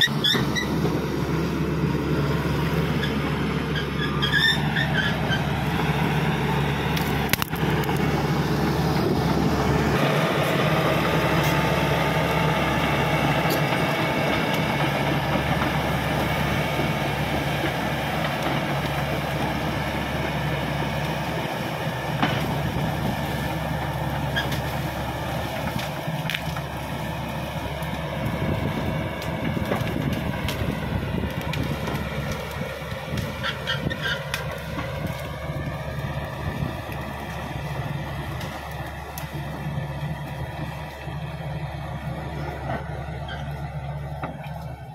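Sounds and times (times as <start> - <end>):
bulldozer diesel engine running: 0.0 - 44.9.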